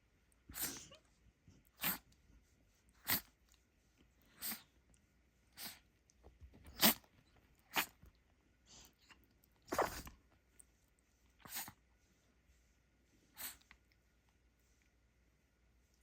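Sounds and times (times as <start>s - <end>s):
dog sneezing: 0.5s - 1.0s, 1.8s - 2.1s, 3.0s - 3.4s, 4.4s - 4.7s, 5.6s - 5.8s, 6.6s - 8.0s, 9.6s - 10.2s, 11.4s - 11.8s, 13.4s - 13.6s.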